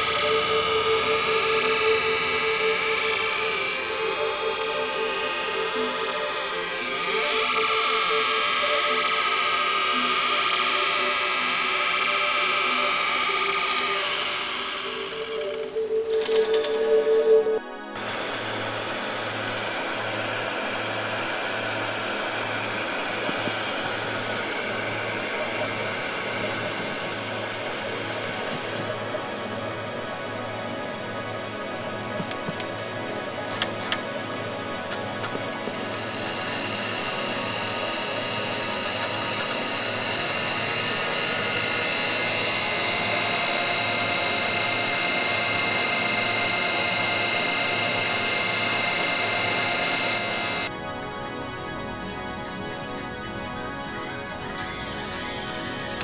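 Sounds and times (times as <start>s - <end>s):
pulsing low hum: 0.0s - 16.0s, 18.0s - 31.6s, 35.5s - 50.7s
mechanical whirring with high whine: 0.0s - 56.0s.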